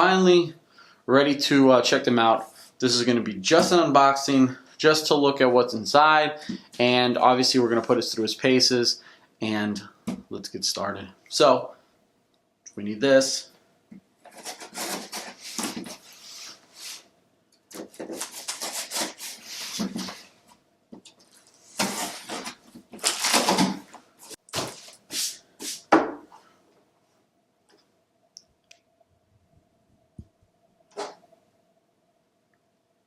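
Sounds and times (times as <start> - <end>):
cardboard scraping: 14.2 - 17.0, 17.7 - 20.4, 21.3 - 25.0
plastic wrap crinkling: 21.2 - 23.9.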